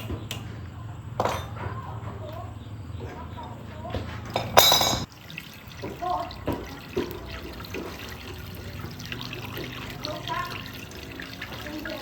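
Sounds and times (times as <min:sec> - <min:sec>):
water running and splashing: 0:05.0 - 0:12.0.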